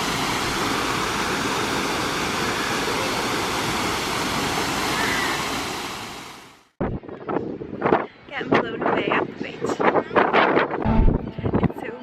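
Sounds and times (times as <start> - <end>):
waterfall rushing: 0.0 - 6.5.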